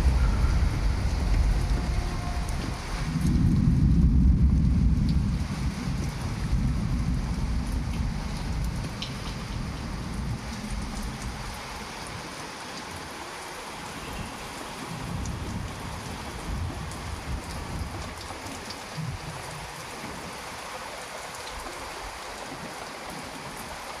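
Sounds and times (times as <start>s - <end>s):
thunder rumbling: 0.0s - 11.8s
rain drop ticks: 0.0s - 13.0s, 15.0s - 19.9s
heavy rain falling: 0.0s - 24.0s.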